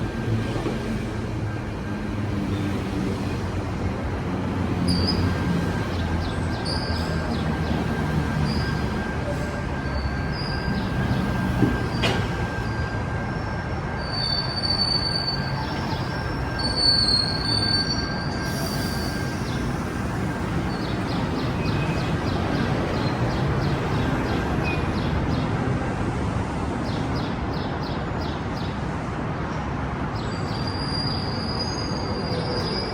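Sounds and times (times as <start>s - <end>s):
train rumbling: 0.0s - 32.9s
wheel and brake squeals: 4.7s - 25.1s, 30.2s - 32.9s.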